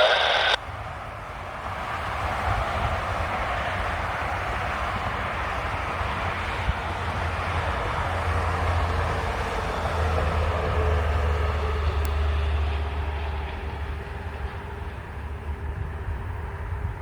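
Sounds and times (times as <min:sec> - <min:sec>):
faint thin tone: 0:00.0 - 0:00.6
train rumble: 0:00.0 - 0:17.0.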